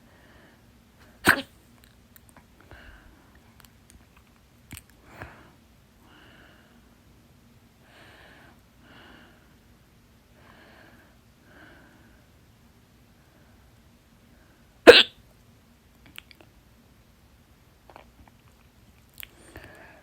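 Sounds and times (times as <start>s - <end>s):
woman breathing audibly: 0.0s - 1.2s, 2.6s - 3.4s, 5.0s - 7.0s, 7.8s - 9.6s, 10.4s - 12.4s, 19.3s - 20.0s
woman hiccuping: 1.2s - 1.5s, 14.9s - 15.1s.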